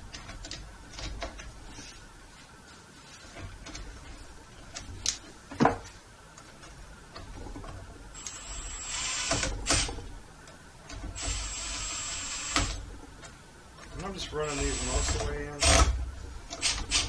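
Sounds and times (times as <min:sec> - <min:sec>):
cordless drill whining: 0:08.2 - 0:10.0, 0:11.2 - 0:12.8, 0:14.4 - 0:16.0.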